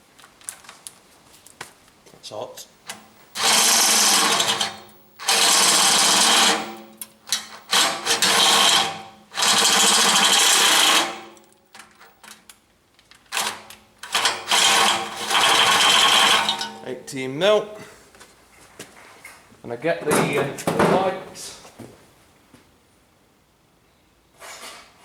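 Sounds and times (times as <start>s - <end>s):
electric drill cutting metal: 3.4s - 6.9s, 7.6s - 11.4s, 14.1s - 16.8s.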